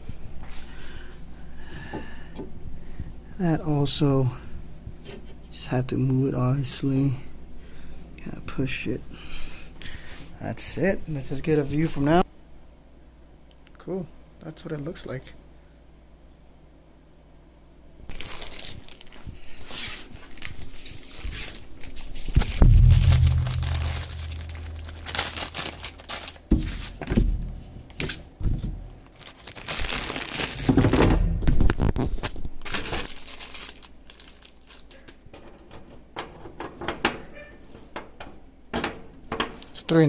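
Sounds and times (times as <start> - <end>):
low steady hum: 21.5 - 32.6.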